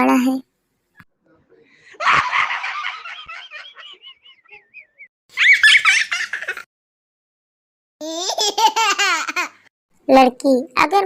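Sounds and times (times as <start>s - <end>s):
high bubbly giggling laugh: 2.0s - 6.7s.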